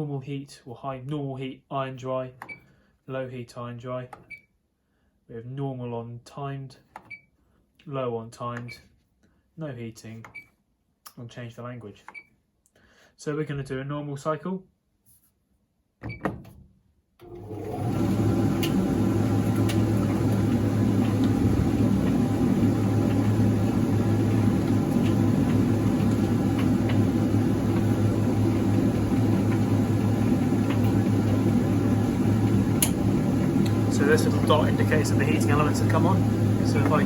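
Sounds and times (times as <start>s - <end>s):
tumble dryer running: 17.2s - 37.0s.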